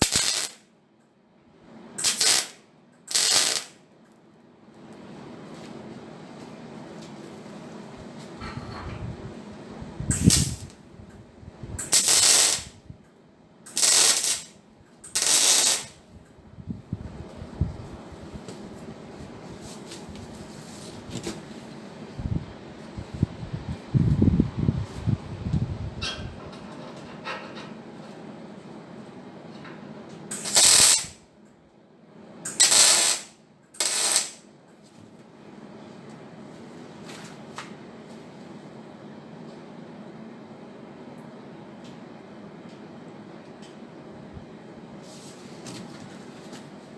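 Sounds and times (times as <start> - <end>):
welding hissing crackle: 0.0 - 0.7, 2.0 - 3.8, 10.1 - 10.8, 11.8 - 12.8, 13.7 - 16.0, 30.3 - 31.2, 32.5 - 34.5
steady low hum: 0.0 - 32.6, 34.4 - 46.9.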